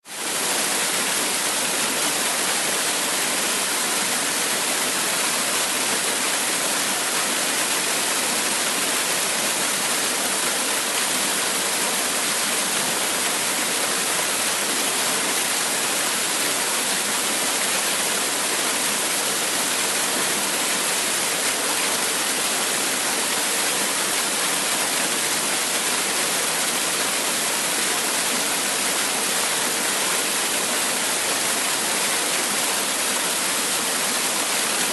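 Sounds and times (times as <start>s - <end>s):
waterfall rushing: 0.1s - 34.9s.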